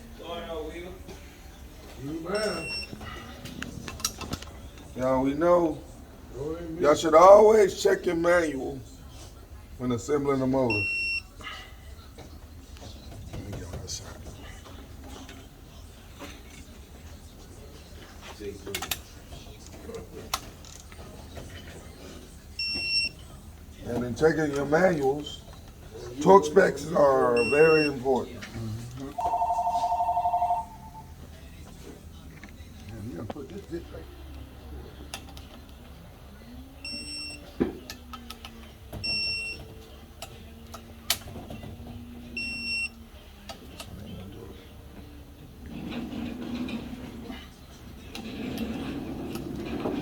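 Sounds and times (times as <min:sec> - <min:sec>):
tools clicking and knocking on metal: 0:03.6 - 0:04.5
short high electronic beep: 0:29.2 - 0:31.1.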